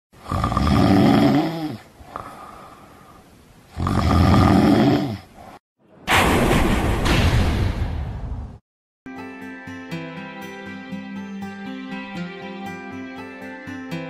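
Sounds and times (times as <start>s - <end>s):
person snoring: 0.2s - 5.4s.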